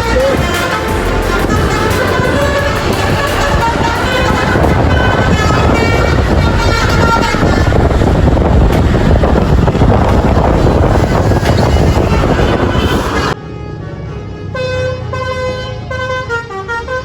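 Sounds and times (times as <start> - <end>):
bus engine rumble: 0.0 - 17.0
multi-tone air horn tune: 0.0 - 17.0.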